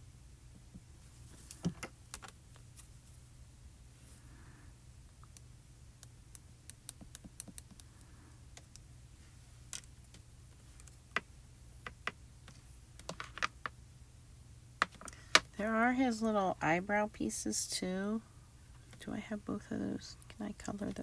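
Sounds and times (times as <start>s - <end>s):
low steady hum: 0.0s - 21.0s
craft tools clicking and tapping: 10.8s - 13.8s, 14.8s - 15.5s.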